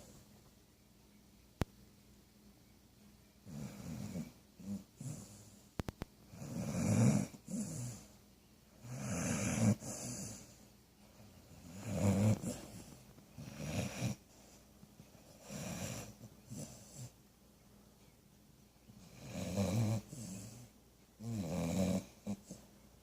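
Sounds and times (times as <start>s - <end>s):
rasping snore: 3.5s - 5.5s, 6.3s - 8.1s, 8.8s - 10.5s, 11.6s - 14.2s, 15.3s - 17.1s, 19.0s - 22.6s.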